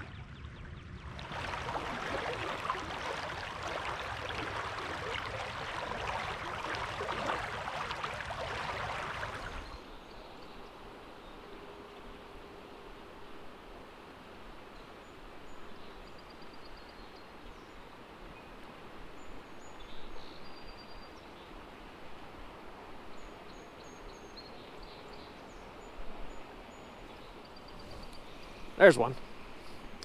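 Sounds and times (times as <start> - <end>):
river water flowing: 1.0 - 11.2, 21.2 - 30.0.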